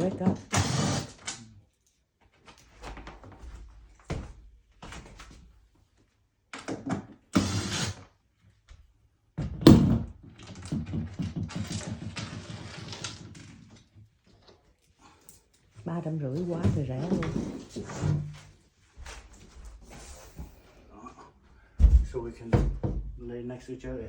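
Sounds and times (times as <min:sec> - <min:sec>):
wooden panels knocking: 0:21.8 - 0:23.2.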